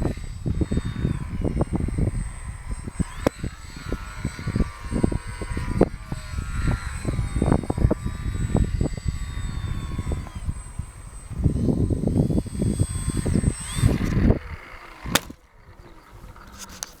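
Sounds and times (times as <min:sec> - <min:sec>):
model plane motor whine: 0:00.0 - 0:17.0
wind buffeting microphone: 0:00.0 - 0:17.0
sharp click: 0:15.1 - 0:15.5.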